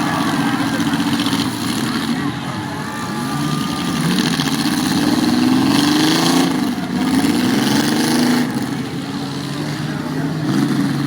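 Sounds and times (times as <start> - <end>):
car engines revving: 0.0 - 11.0.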